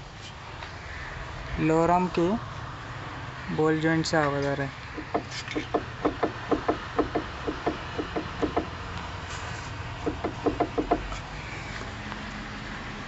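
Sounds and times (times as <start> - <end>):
suspension clunking knocks: 5.0 - 8.8, 10.0 - 11.3.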